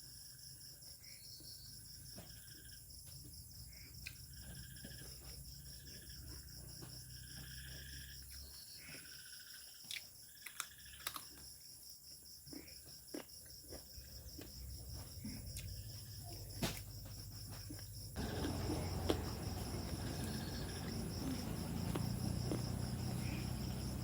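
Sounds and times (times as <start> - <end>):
crickets chirping: 0.0 - 24.0
close-up chewing and eating: 7.6 - 11.6, 12.3 - 24.0
loud rough noise: 18.2 - 24.0.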